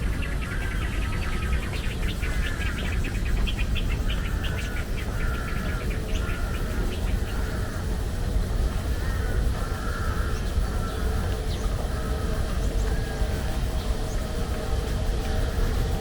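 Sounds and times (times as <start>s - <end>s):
songbirds chirping: 0.0s - 16.0s
steady low rumble: 0.0s - 16.0s.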